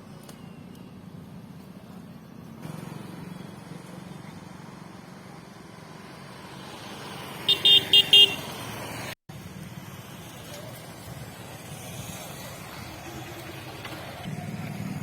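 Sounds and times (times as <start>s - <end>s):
road traffic rumble: 0.0s - 15.0s
vehicle horn toots: 7.5s - 8.5s.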